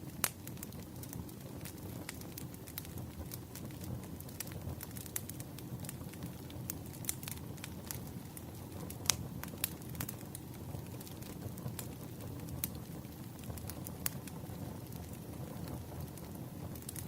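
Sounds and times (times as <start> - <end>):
campfire crackling and popping: 0.0 - 17.0
flames rumbling: 0.0 - 17.0.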